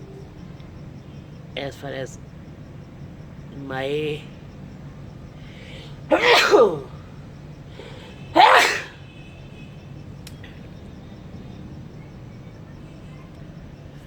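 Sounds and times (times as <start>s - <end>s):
quick in-breath: 5.4s - 6.0s, 7.7s - 8.9s
man sneezing: 6.1s - 6.9s, 8.4s - 9.0s.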